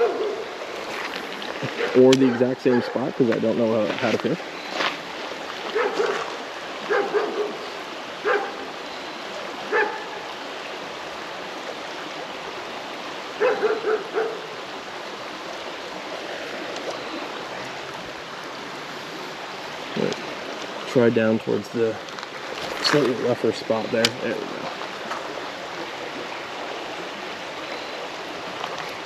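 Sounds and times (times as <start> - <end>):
dog barking: 0.0 - 0.5, 1.7 - 3.1, 5.7 - 6.3, 6.9 - 7.6, 8.2 - 8.6, 9.7 - 10.3, 13.4 - 14.5
creek rushing: 0.0 - 29.0.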